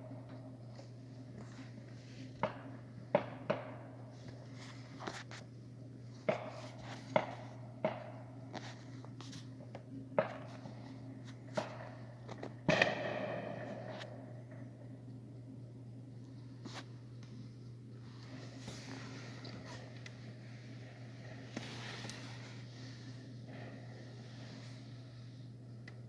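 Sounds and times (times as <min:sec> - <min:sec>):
steady low hum: 0:00.0 - 0:26.0
distant fireworks bangs and pops: 0:02.4 - 0:04.1, 0:06.2 - 0:08.3, 0:10.1 - 0:14.7.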